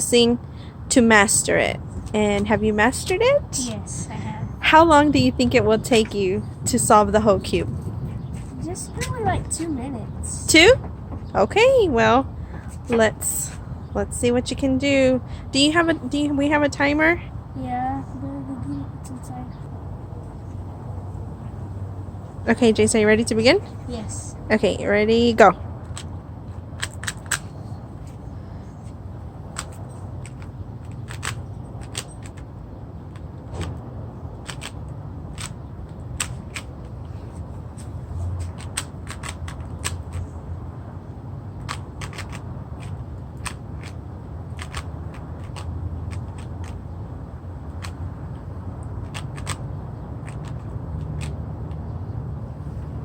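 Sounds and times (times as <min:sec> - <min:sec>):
steady low hum: 0:00.0 - 0:30.8.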